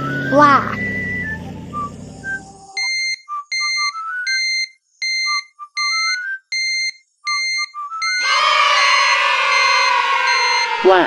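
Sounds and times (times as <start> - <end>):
short electronic beeps: 0.0 - 10.9
rising runs of short notes: 8.0 - 11.0.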